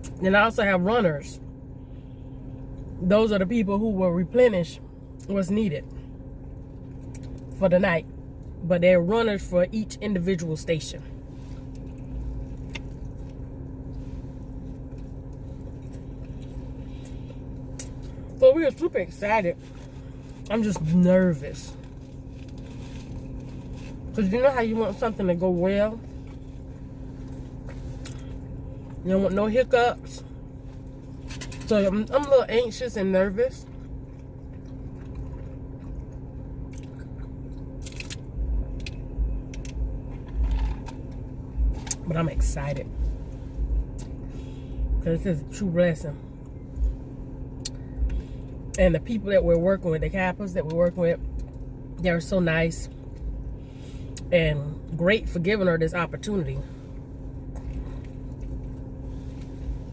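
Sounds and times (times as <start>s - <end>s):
car engine idling: 0.0s - 59.9s
steady low hum: 0.0s - 59.9s
chewing sandwich: 33.6s - 40.9s.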